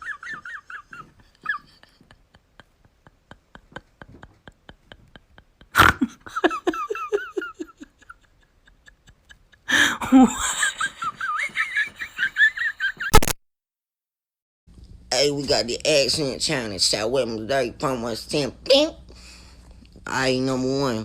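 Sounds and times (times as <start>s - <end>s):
laughter with wavering squeals: 0.0s - 13.1s
high-pitched giggles: 0.0s - 13.2s.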